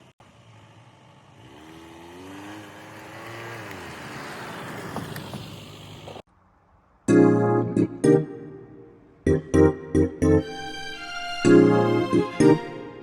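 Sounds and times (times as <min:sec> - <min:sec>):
car engine and tyre noise: 0:00.0 - 0:07.1.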